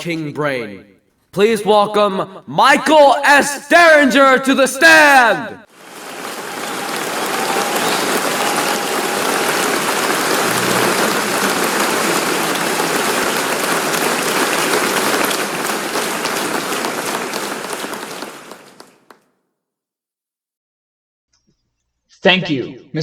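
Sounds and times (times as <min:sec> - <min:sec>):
crowd applauding: 0:04.8 - 0:19.2.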